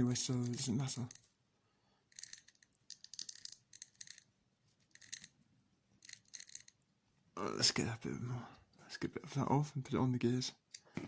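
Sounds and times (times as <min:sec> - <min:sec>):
plastic gears clicking and scraping: 0:02.1 - 0:04.2, 0:06.0 - 0:06.7.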